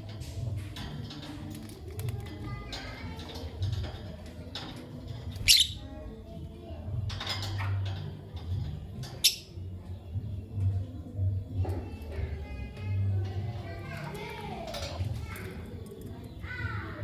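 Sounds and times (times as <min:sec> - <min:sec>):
lovebirds chirping: 0:05.2 - 0:06.7, 0:08.7 - 0:12.8.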